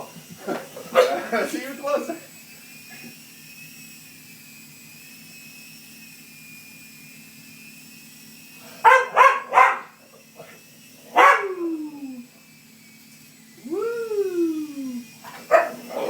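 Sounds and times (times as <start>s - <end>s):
toy helicopter motor whining: 0.0s - 16.0s
small dog barking: 0.9s - 1.2s, 8.8s - 10.0s, 11.1s - 11.7s, 15.2s - 16.0s.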